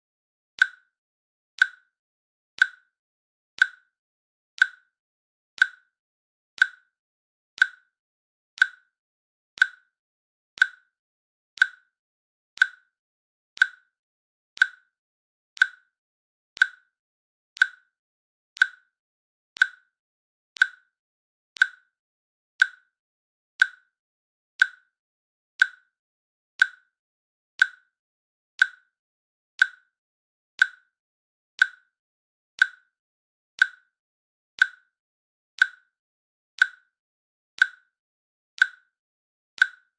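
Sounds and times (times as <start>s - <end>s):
timer clicking: 0.6s - 1.0s, 1.6s - 1.9s, 2.6s - 2.9s, 3.6s - 3.9s, 4.6s - 4.9s, 5.6s - 5.9s, 6.6s - 7.0s, 7.6s - 8.0s, 8.6s - 9.0s, 9.6s - 10.0s, 10.6s - 11.0s, 11.6s - 12.0s, 12.6s - 13.0s, 13.6s - 14.0s, 14.6s - 15.0s, 15.6s - 16.0s, 16.6s - 17.0s, 17.6s - 18.0s, 18.6s - 19.0s, 19.6s - 20.0s, 20.6s - 21.0s, 21.6s - 22.0s, 22.6s - 23.0s, 23.6s - 24.0s, 24.6s - 25.0s, 25.6s - 26.0s, 26.6s - 27.0s, 27.6s - 28.0s, 28.6s - 29.0s, 29.6s - 30.0s, 30.6s - 31.0s, 31.6s - 32.0s, 32.6s - 33.0s, 33.6s - 34.0s, 34.6s - 35.0s, 35.6s - 36.0s, 36.6s - 37.0s, 37.6s - 38.0s, 38.6s - 39.0s, 39.6s - 39.9s.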